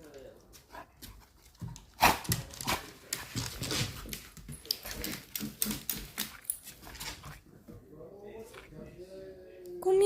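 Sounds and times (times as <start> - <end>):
dog claws clicking and scuffling: 0.0 - 7.4.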